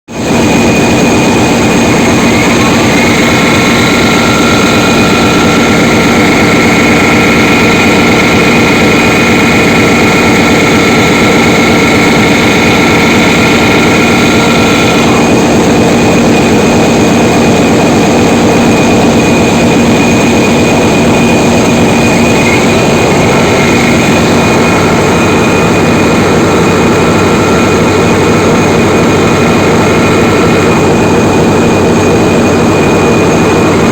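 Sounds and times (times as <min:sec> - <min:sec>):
engine machinery din: 0:00.1 - 0:33.9
thin steady whine: 0:00.2 - 0:33.9.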